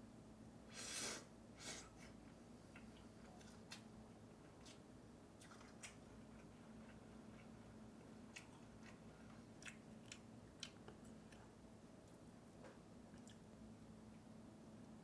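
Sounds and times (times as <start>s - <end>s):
quiet steady hum: 0.0s - 15.0s
chewing noodles: 5.4s - 11.5s.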